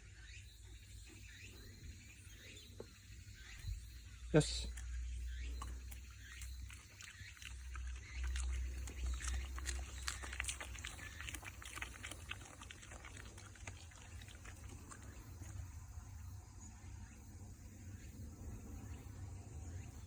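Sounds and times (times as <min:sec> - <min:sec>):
dog crunching cabbage: 0:05.6 - 0:16.0.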